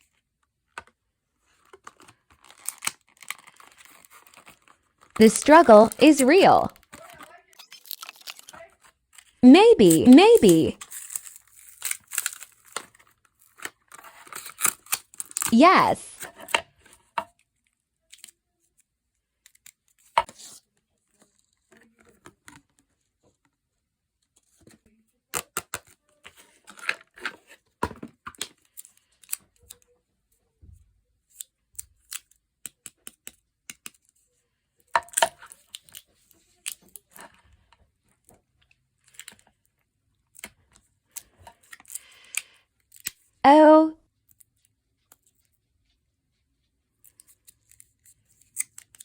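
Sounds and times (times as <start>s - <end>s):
plastic packaging crinkling: 1.9s - 4.8s, 7.6s - 8.5s.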